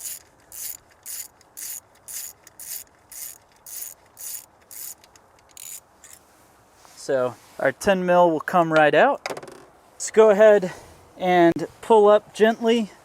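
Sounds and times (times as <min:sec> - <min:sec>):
ratchet wrench clicking: 0:00.0 - 0:06.2.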